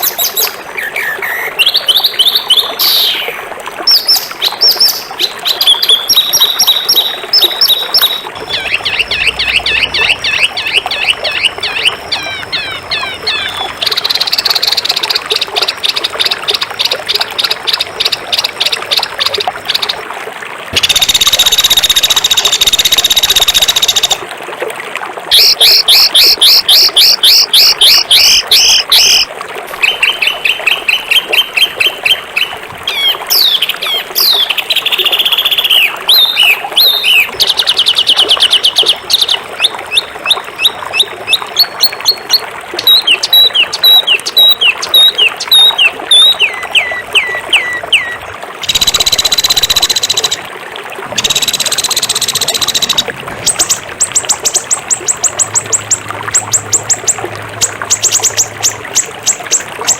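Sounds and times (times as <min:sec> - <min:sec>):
songbird singing trills and whistles: 0:00.0 - 0:20.0, 0:20.8 - 0:24.2, 0:25.3 - 0:50.4, 0:51.2 - 0:59.9
harsh buzzy bird calls: 0:04.0 - 0:18.1.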